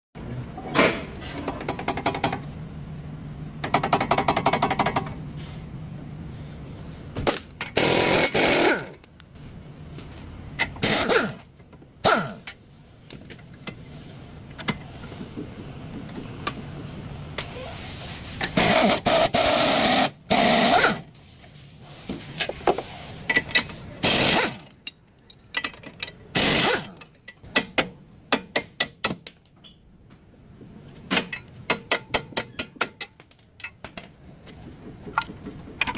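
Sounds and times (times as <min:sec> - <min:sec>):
metal clanks and scrapes: 0:00.6 - 0:02.6, 0:21.8 - 0:27.6.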